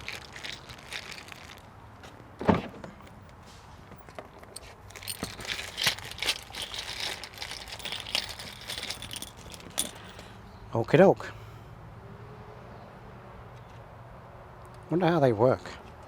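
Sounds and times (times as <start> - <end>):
packaging crinkling: 0.0 - 1.7, 4.9 - 10.2.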